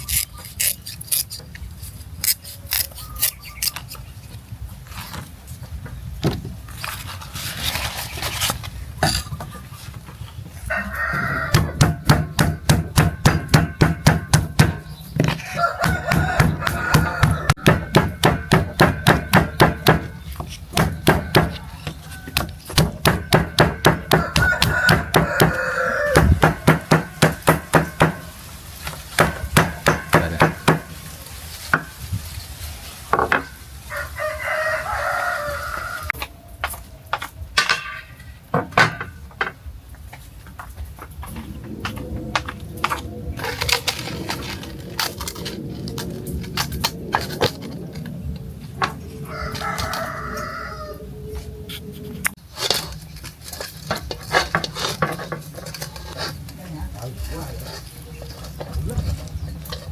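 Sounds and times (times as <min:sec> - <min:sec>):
rooster crowing: 0:10.6 - 0:11.9, 0:15.3 - 0:17.8, 0:20.8 - 0:22.8, 0:23.8 - 0:27.4, 0:33.9 - 0:36.3, 0:49.1 - 0:51.5
steady chopping: 0:11.5 - 0:14.9, 0:15.8 - 0:21.6, 0:22.4 - 0:28.3, 0:29.2 - 0:30.9.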